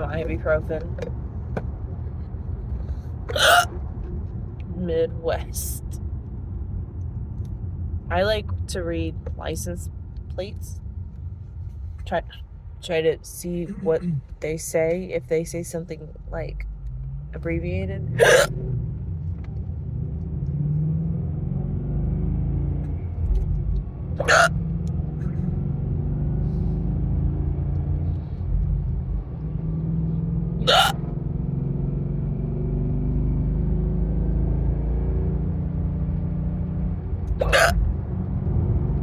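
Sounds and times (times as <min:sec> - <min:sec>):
road noise inside car: 0:00.0 - 0:39.0
woman hiccupping: 0:03.3 - 0:03.7, 0:18.2 - 0:18.5, 0:24.2 - 0:24.5, 0:30.7 - 0:31.0, 0:37.4 - 0:37.7.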